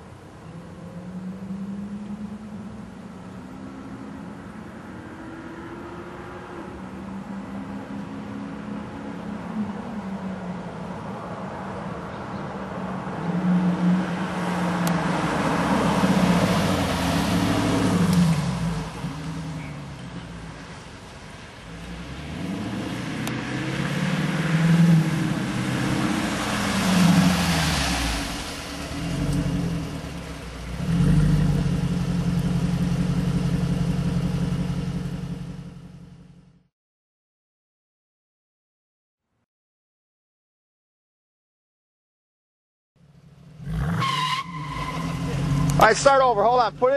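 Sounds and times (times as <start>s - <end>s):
car engine revving: 13.2s - 20.6s, 21.7s - 36.6s, 43.1s - 46.9s.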